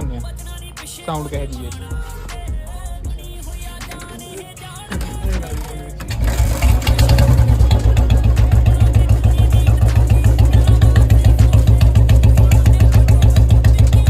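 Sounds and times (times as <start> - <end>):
motorcycle engine starting and idling: 3.8 - 14.0.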